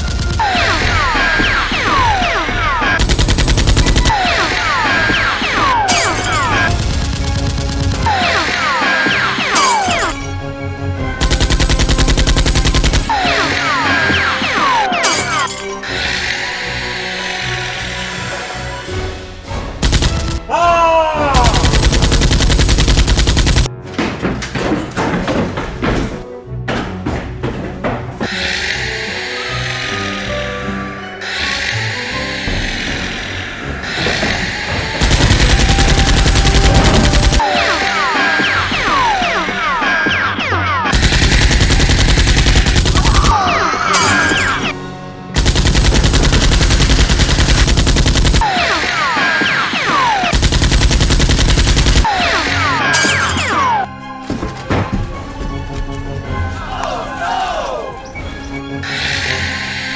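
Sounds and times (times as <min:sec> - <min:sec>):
gunshots: 0:00.0 - 0:08.6, 0:09.4 - 0:10.4, 0:34.0 - 0:37.9, 0:40.4 - 0:44.8, 0:45.4 - 0:53.9
background music: 0:00.0 - 0:59.9
rapid automatic gunfire: 0:02.0 - 0:04.1, 0:21.6 - 0:23.7, 0:35.0 - 0:37.4, 0:40.9 - 0:43.3, 0:45.4 - 0:48.5, 0:50.3 - 0:52.1
automatic gunfire: 0:45.4 - 0:48.4.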